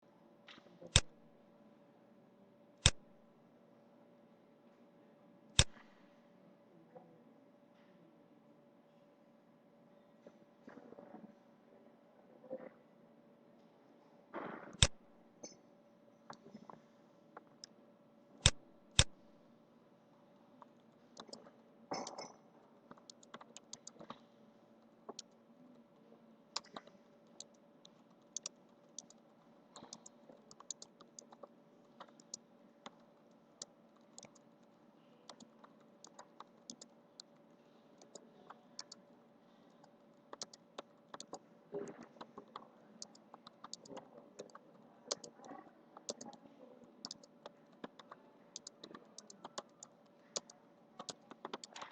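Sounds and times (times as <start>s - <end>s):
faint steady hum: 0.0s - 51.9s
computer keyboard typing: 20.6s - 24.2s, 24.8s - 25.4s, 26.5s - 51.9s.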